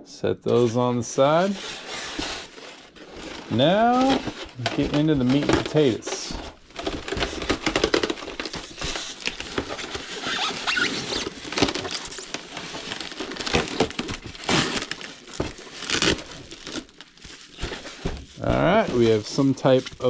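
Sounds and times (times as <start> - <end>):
styrofoam squeaking and scraping: 0.6 - 20.0
packaging crinkling: 1.4 - 20.0.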